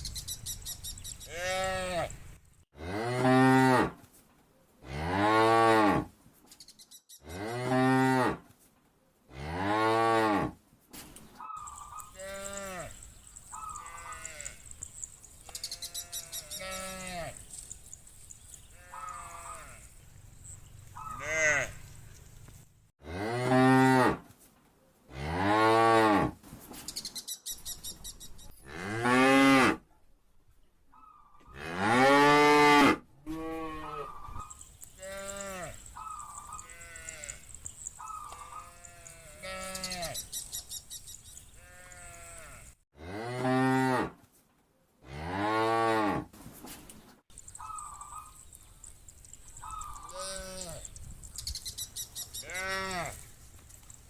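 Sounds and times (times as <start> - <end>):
cows mooing: 12.0 - 17.5, 21.0 - 21.8, 34.9 - 40.2, 52.4 - 53.3.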